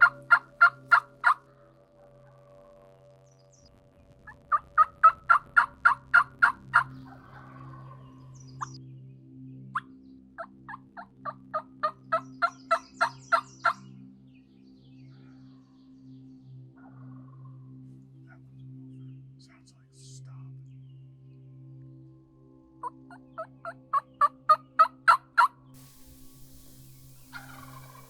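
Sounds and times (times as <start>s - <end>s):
turkey mouth call yelps: 0.0s - 1.4s, 4.3s - 7.4s, 22.8s - 28.0s.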